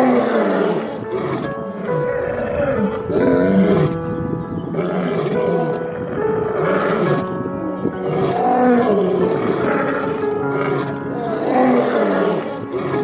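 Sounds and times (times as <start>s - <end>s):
background music with held notes: 0.0s - 13.0s.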